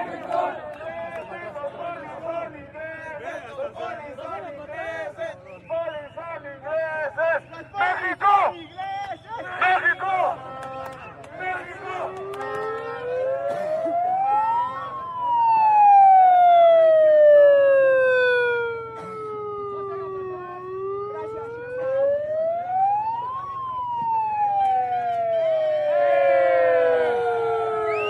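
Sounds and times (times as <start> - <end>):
siren wailing: 11.6 - 28.0.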